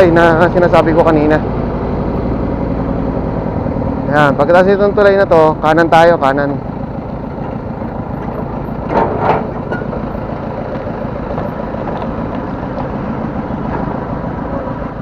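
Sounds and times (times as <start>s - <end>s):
motorcycle engine running: 0.0s - 15.0s
road and wind noise: 0.0s - 15.0s.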